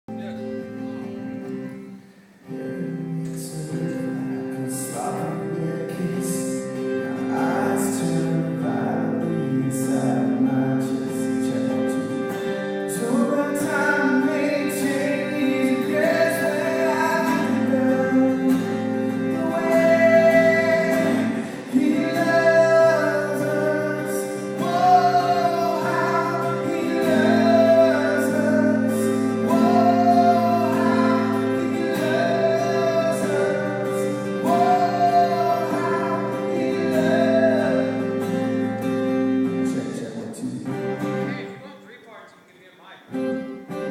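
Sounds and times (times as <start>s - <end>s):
person singing worship song: 12.9s - 38.6s.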